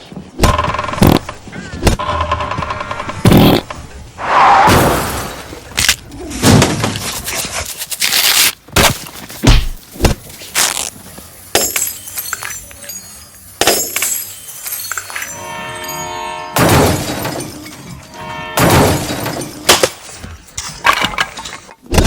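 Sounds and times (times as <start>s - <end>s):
crash and smash sound effects: 4.2s - 5.5s.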